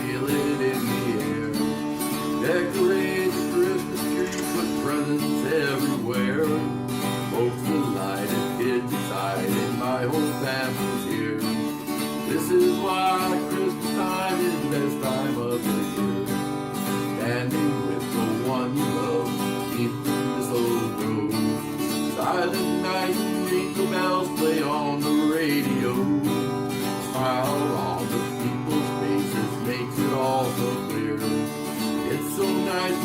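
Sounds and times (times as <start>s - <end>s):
acoustic guitar strumming: 0.0s - 33.0s.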